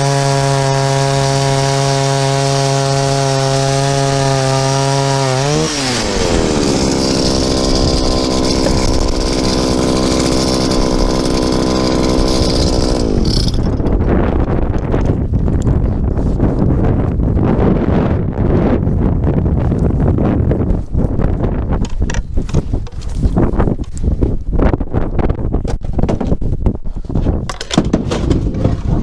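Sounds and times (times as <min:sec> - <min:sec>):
ice auger engine running: 0:00.0 - 0:14.0
wind noise on microphone: 0:00.0 - 0:29.0.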